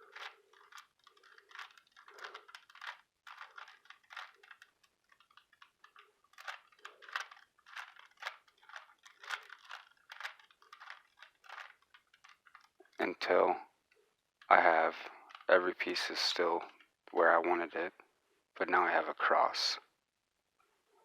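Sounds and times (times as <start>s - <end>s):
plastic puzzle cube clicking: 0.0s - 13.0s, 15.1s - 15.5s.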